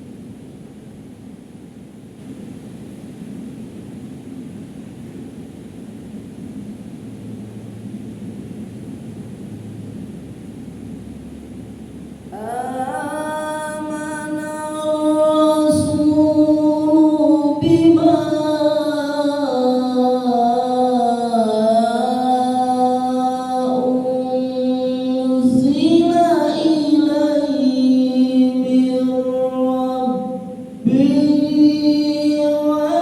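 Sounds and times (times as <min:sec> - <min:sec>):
person chanting a recitation: 0:12.3 - 0:33.0.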